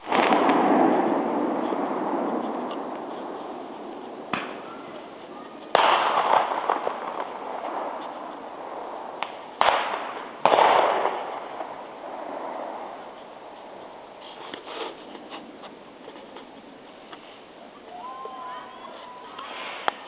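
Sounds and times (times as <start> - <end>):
fireworks bangs with echo: 0.0 - 13.6.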